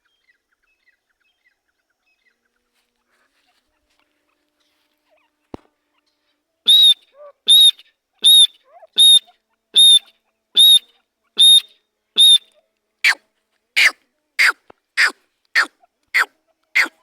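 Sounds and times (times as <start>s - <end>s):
francolin whistled calls: 6.7s - 13.2s, 13.8s - 17.0s.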